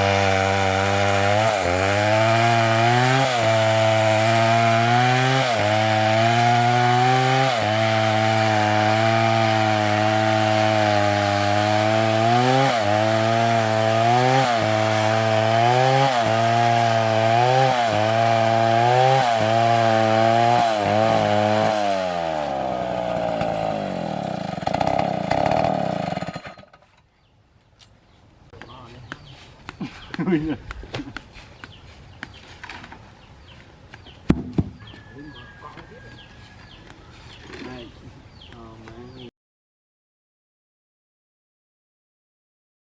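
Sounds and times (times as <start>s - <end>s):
chainsaw cutting wood: 0.0s - 27.0s.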